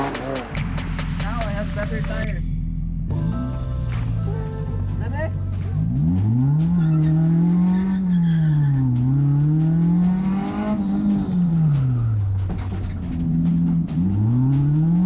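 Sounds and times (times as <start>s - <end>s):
car engine revving hard: 0.0s - 3.4s, 5.8s - 15.0s.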